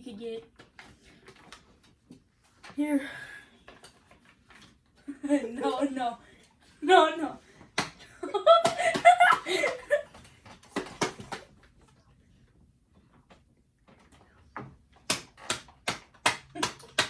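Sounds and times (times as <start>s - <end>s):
plastic toy bottle being struck: 15.1s - 17.0s.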